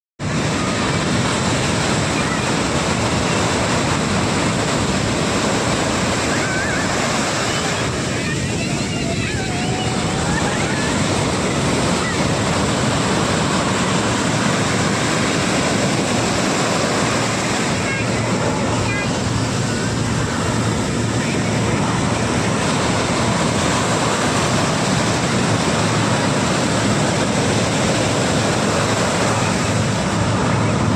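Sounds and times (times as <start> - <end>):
ocean waves breaking: 0.2 - 30.9.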